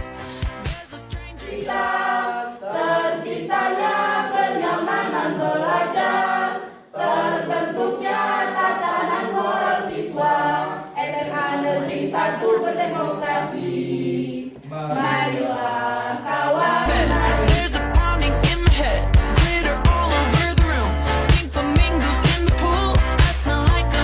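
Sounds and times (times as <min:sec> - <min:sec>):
choir singing: 0:01.4 - 0:18.4
drum beat: 0:16.9 - 0:23.4.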